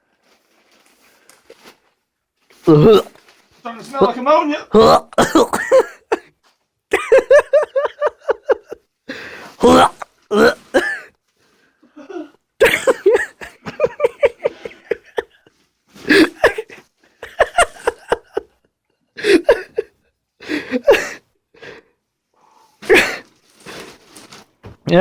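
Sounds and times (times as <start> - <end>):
person coughing and gagging: 2.7 - 3.2, 4.7 - 6.3, 9.6 - 11.1, 12.0 - 15.4, 16.0 - 18.5, 19.2 - 20.0, 20.6 - 21.2, 22.8 - 23.8.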